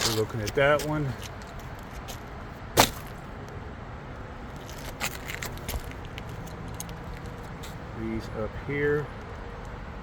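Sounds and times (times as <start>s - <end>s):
roof shingle cracking: 2.8s - 3.2s.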